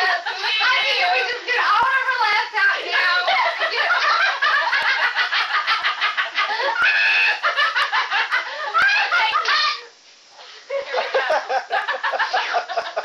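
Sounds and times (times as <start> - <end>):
child squealing: 6.8 - 7.4
children's high-pitched voices: 8.8 - 9.9.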